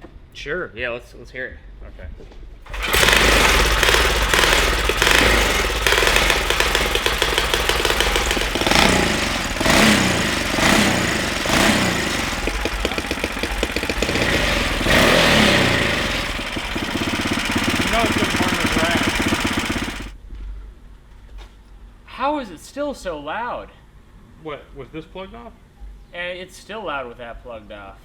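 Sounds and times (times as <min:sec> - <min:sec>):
engine revving: 0:02.7 - 0:20.1.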